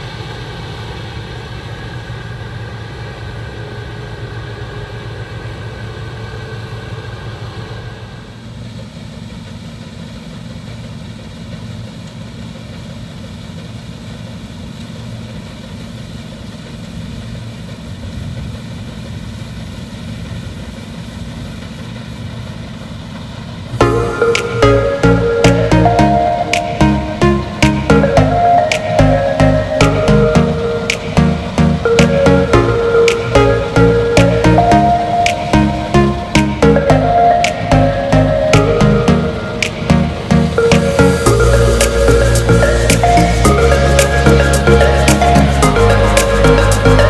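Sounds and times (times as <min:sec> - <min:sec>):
low engine drone: 0:23.7 - 0:47.0.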